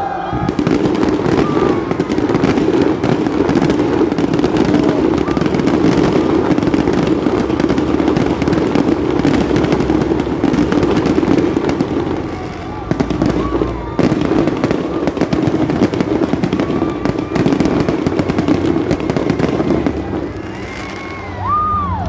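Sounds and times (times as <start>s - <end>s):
fireworks bangs and crackles: 0.3s - 22.0s.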